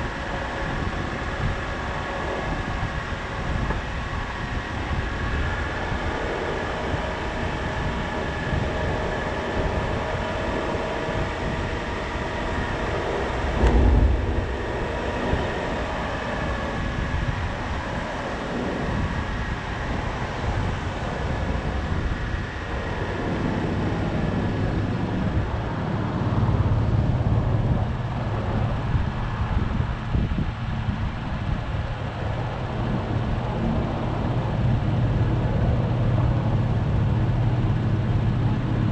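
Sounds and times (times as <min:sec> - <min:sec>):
car engine and road rumble: 0:00.0 - 0:38.9
low engine hum: 0:00.0 - 0:38.9
loud low thump: 0:13.3 - 0:17.4.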